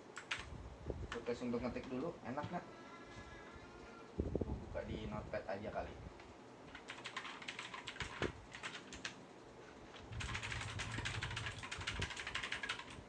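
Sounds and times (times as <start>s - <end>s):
typing on a mechanical keyboard: 0.2s - 0.5s, 6.7s - 9.2s, 10.0s - 13.0s.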